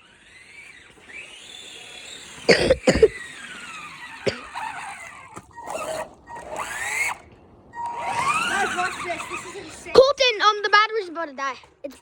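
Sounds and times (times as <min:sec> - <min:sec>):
rc car electric motor whining: 0:00.0 - 0:02.5, 0:03.1 - 0:10.0.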